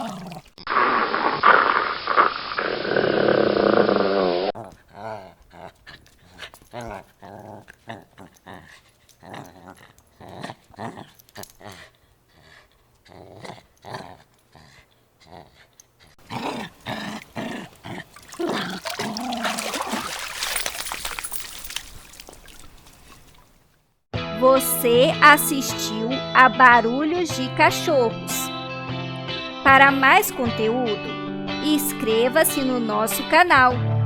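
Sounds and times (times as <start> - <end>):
dog growling: 0.0 - 21.4.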